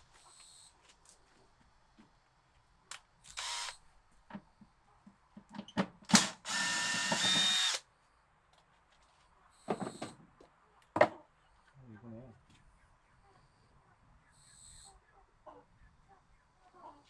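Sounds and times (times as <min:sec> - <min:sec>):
power drill whining: 0:03.3 - 0:03.8, 0:06.1 - 0:07.8.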